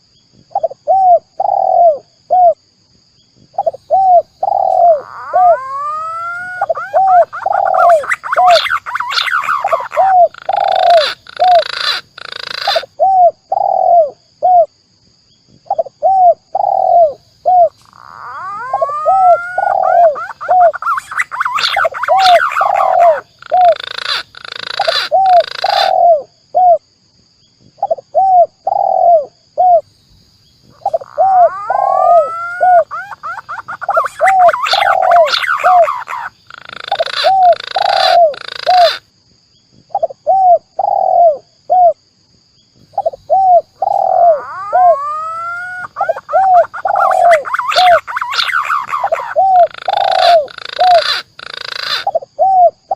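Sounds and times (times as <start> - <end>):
dove and pigeon calls: 0.5 - 2.6, 3.6 - 14.7, 15.7 - 26.8, 27.8 - 29.9, 30.6 - 39.0, 39.9 - 42.0, 42.9 - 52.9
short harsh bird bursts: 18.2 - 25.9, 30.8 - 39.0, 43.9 - 52.2.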